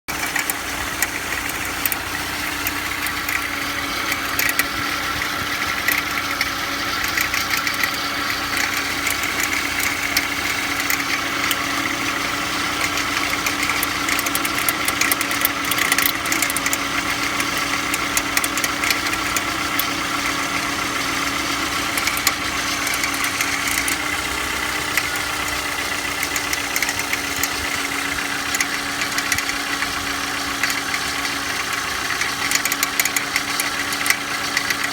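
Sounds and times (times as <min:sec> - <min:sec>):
engine idling hum: 0:00.0 - 0:34.9
engine whine: 0:00.0 - 0:34.9
rapid engine ticking: 0:00.0 - 0:34.9.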